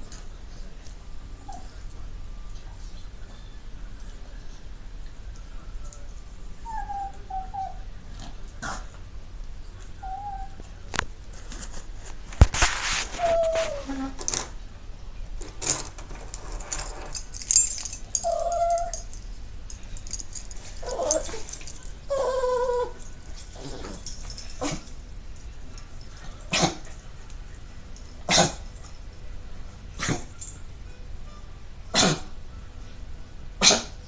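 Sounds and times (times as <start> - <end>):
dog whining and yipping: 6.6 - 7.9, 10.0 - 10.6, 13.1 - 14.1, 17.8 - 19.2, 20.8 - 24.8.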